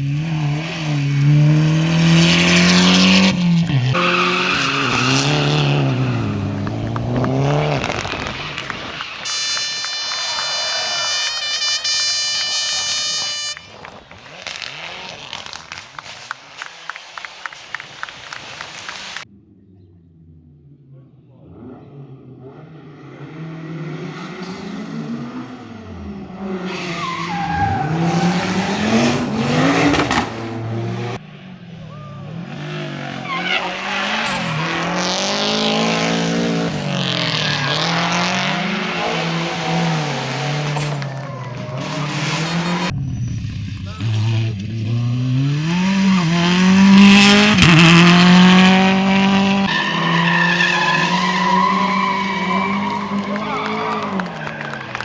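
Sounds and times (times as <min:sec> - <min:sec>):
rally car engine revving: 0:00.0 - 0:55.0
tyres squealing: 0:01.7 - 0:19.2, 0:33.0 - 0:43.0, 0:45.7 - 0:55.0
sharp exhaust cracks: 0:03.0 - 0:19.2.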